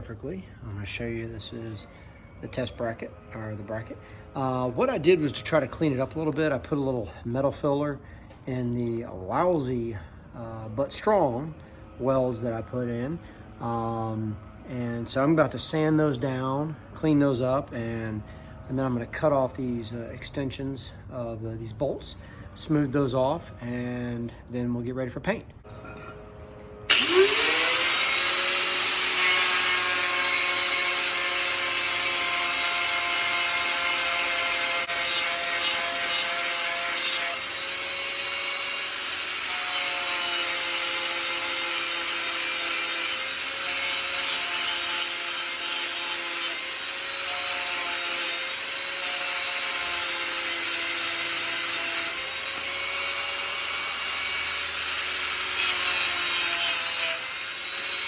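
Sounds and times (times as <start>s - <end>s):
power sander on metal: 26.8s - 58.0s.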